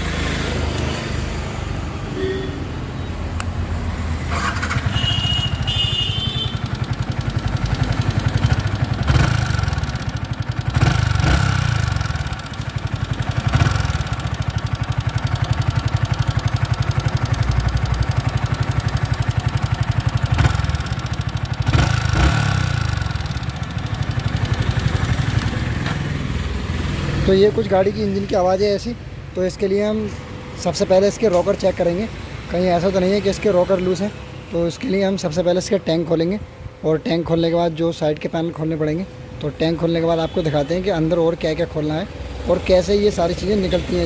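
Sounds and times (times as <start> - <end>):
motorcycle engine idling: 4.4 - 25.9.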